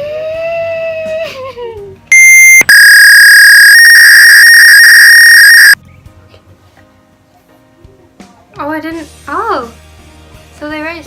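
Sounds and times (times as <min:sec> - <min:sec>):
loud piercing electronic beep: 0:02.1 - 0:05.8.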